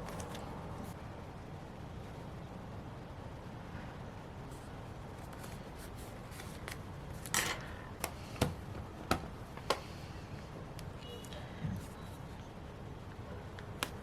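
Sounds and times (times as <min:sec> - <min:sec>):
paper rustling: 0:04.5 - 0:08.2.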